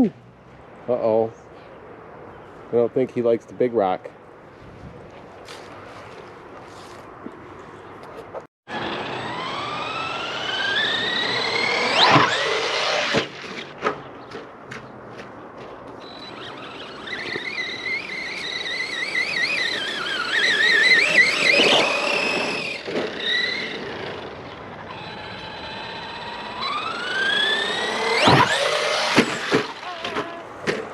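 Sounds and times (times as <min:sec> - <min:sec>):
electric motor whining: 0:08.7 - 0:13.6, 0:16.0 - 0:30.9.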